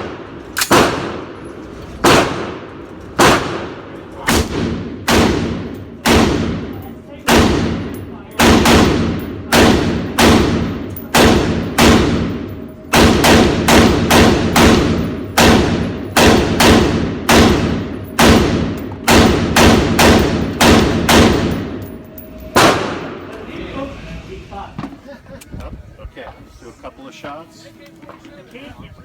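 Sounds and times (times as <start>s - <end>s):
gunshots with echo: 0.0s - 1.4s, 2.0s - 23.3s.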